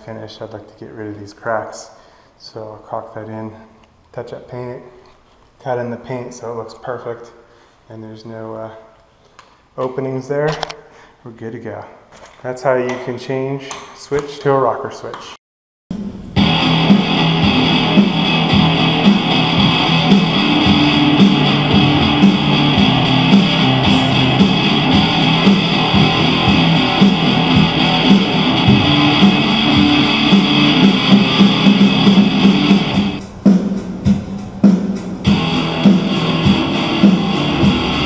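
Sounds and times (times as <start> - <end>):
guitar music with steady beat: 16.4 - 38.0.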